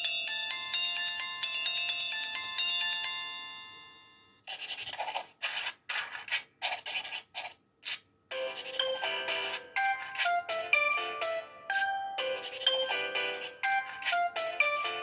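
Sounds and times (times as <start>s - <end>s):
chiming ringtone melody: 0.0s - 4.4s, 8.3s - 15.0s
raspy noise ringtone: 8.3s - 15.0s.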